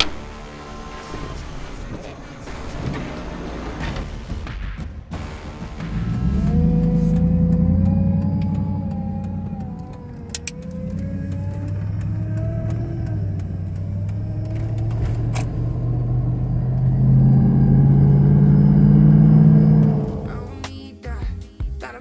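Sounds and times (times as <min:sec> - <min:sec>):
truck engine droning: 0:05.2 - 0:20.7.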